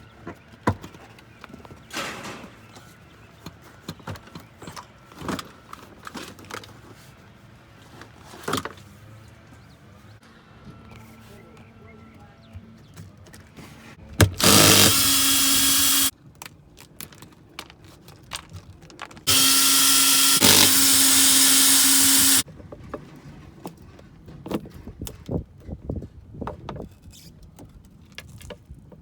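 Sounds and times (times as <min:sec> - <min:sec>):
power drill running: 0:14.4 - 0:16.1, 0:19.3 - 0:22.4.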